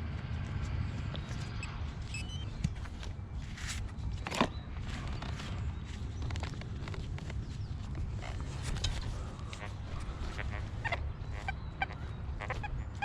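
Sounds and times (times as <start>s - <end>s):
low steady rumble: 0.0s - 13.0s
metal detector beeps: 1.6s - 2.6s
metal detector rising chirp: 1.6s - 2.6s.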